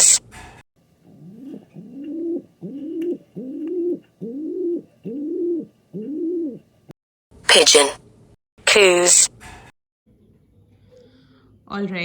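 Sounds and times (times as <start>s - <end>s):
pigeon cooing: 1.0s - 6.7s.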